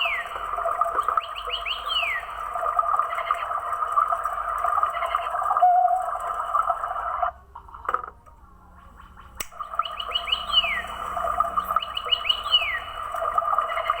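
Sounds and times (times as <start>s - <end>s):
toy bird electronic birdsong: 0.0s - 6.5s, 8.6s - 14.0s
sharp click: 9.4s - 9.6s.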